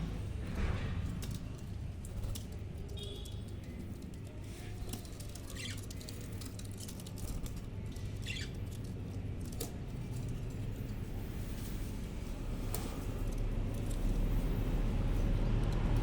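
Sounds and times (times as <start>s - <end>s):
birds moving clicks and patter: 0.8s - 16.0s
budgerigars chirping: 8.2s - 8.5s.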